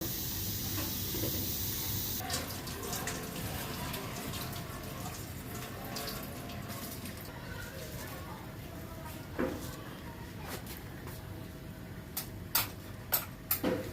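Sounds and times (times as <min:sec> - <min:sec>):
tap water running into sink: 0:00.0 - 0:07.3.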